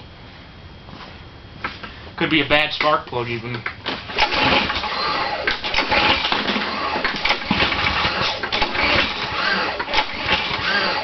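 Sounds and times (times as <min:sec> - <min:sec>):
lawn mower engine running unevenly: 0:03.9 - 0:11.0.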